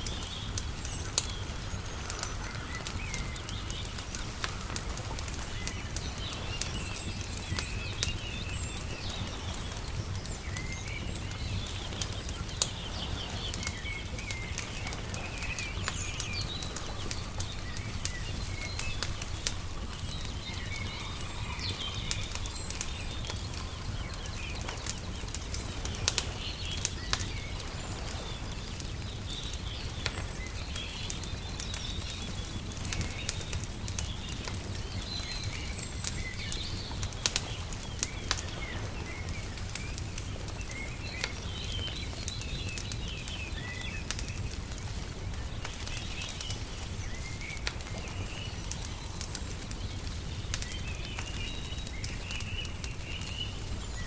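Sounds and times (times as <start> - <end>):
small birds chirping: 0.0 - 54.0
wood fire crackling and popping: 0.0 - 54.0.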